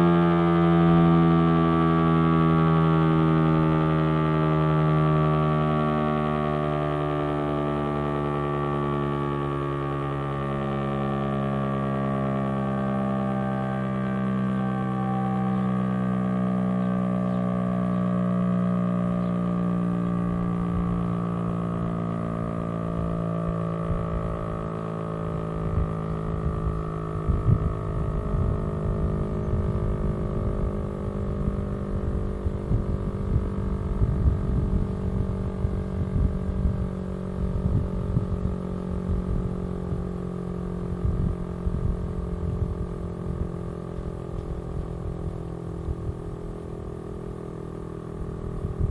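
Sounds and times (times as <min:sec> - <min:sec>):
tornado siren winding down: 0:00.0 - 0:48.9
gusty low rumble: 0:20.0 - 0:48.9.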